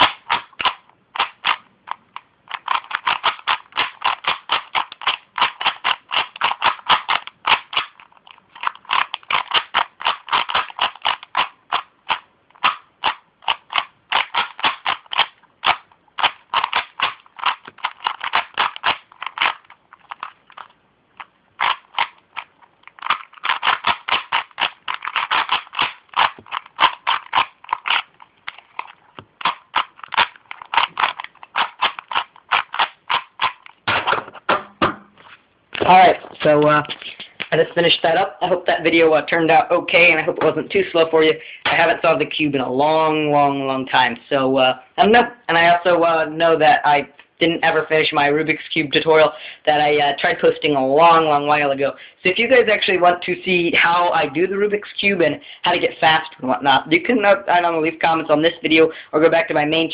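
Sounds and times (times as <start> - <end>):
plastic puzzle cube clicking: 0.0 - 33.9.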